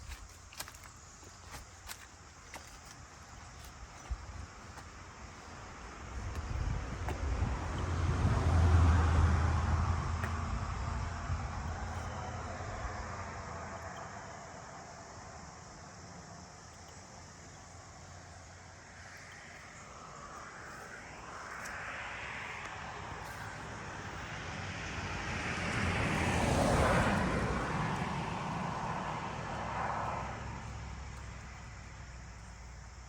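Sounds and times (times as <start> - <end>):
vehicle passing by: 5.7 - 15.5, 18.5 - 33.0.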